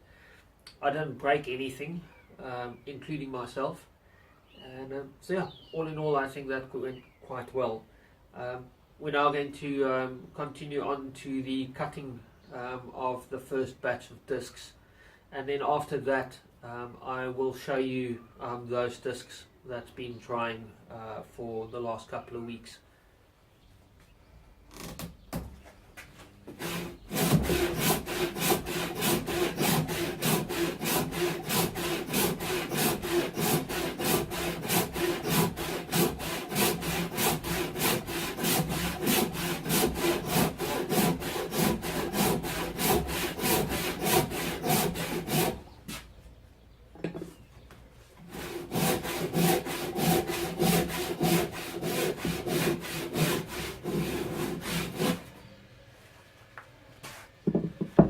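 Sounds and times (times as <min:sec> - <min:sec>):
hand saw cutting log: 0:26.5 - 0:45.7, 0:48.2 - 0:55.3.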